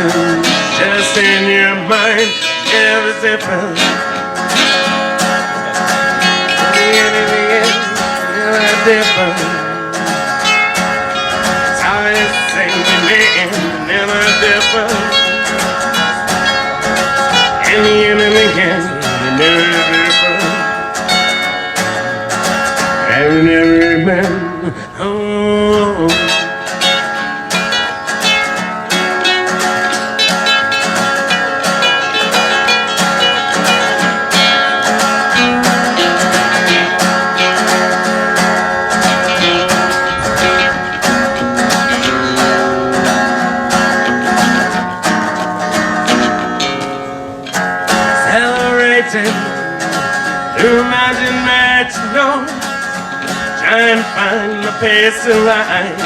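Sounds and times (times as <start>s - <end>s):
person singing: 0.0s - 21.1s, 23.0s - 29.0s, 48.0s - 56.0s
acoustic guitars picking: 0.0s - 56.0s.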